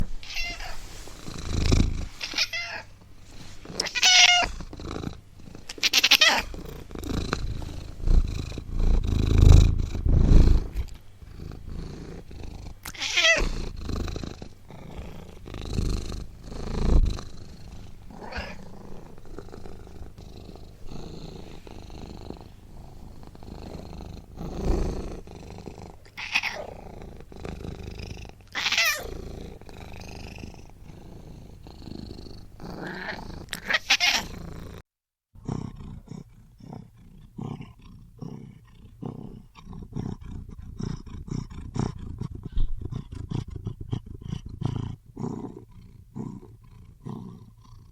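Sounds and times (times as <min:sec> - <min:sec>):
cat purring: 0:00.0 - 0:34.8, 0:35.4 - 0:47.9
cat high-pitched calls: 0:03.8 - 0:04.5, 0:33.6 - 0:34.2.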